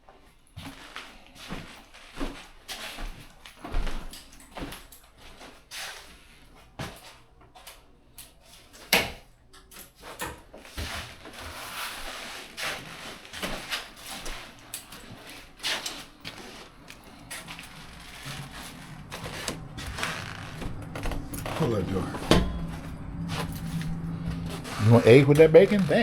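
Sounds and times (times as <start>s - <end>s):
knocks and clunks: 17.5s - 26.0s.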